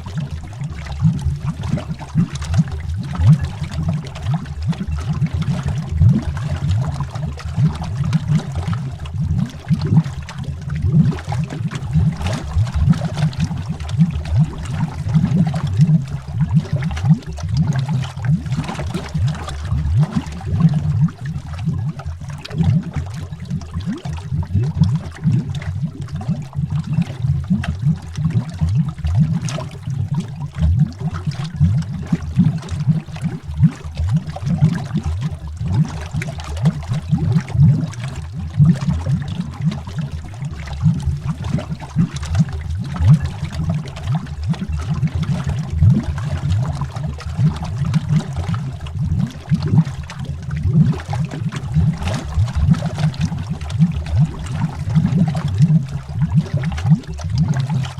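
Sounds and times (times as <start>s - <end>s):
underwater bubbling: 0.0s - 57.9s.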